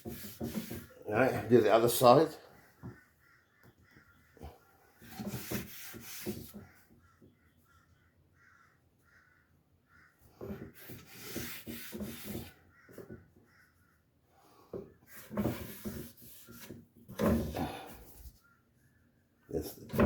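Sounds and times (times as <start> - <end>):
wooden drawer scraping on runners: 0.0 - 1.4, 5.0 - 6.6, 10.4 - 12.5, 15.1 - 18.3.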